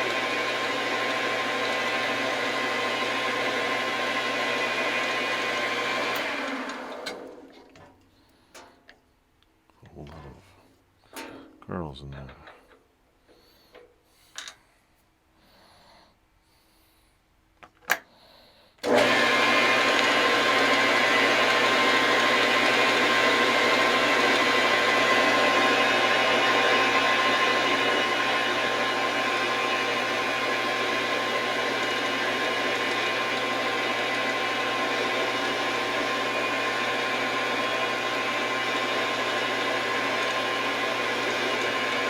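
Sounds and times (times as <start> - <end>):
metal lathe whirring: 18.8 - 42.0.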